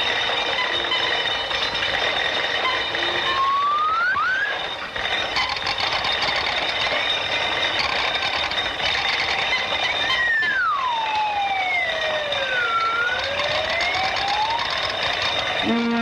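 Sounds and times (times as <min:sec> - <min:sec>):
steady high-pitched tone: 0:00.0 - 0:16.0
rising whistle-like glides: 0:02.5 - 0:06.2, 0:09.0 - 0:16.0.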